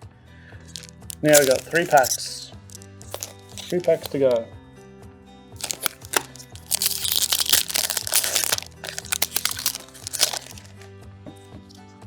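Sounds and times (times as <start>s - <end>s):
foil wrapper crinkling and tearing: 0.7s - 4.4s, 5.6s - 10.8s.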